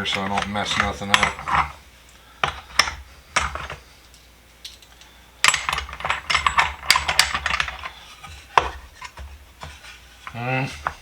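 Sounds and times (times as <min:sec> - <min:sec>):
metal sockets clicking and clattering: 0:00.0 - 0:01.8, 0:02.4 - 0:03.8, 0:04.6 - 0:08.0.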